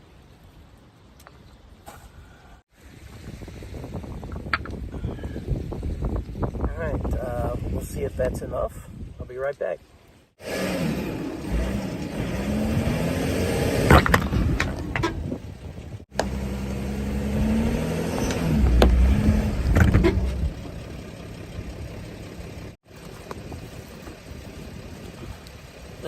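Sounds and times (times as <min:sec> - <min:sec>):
van engine revving: 0:10.4 - 0:15.4, 0:16.1 - 0:22.8.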